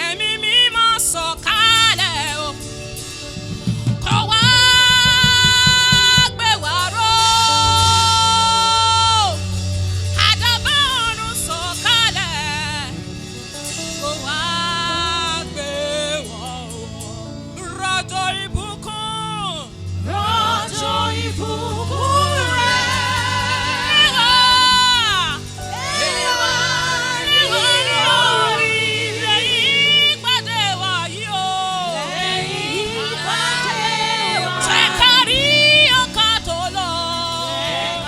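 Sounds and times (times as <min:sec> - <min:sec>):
steady bass accompaniment: 0:00.0 - 0:38.0
person singing with vibrato: 0:14.0 - 0:38.0.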